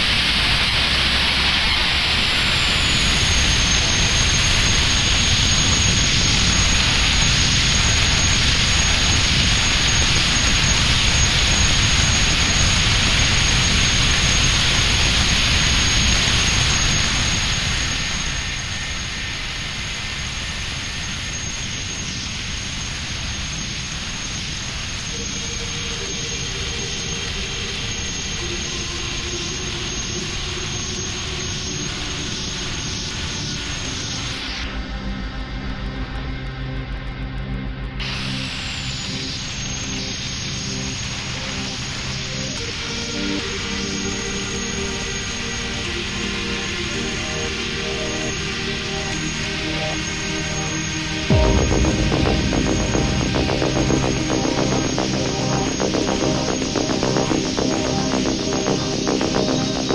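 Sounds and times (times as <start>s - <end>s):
thin high whistle: 38.0s - 59.9s.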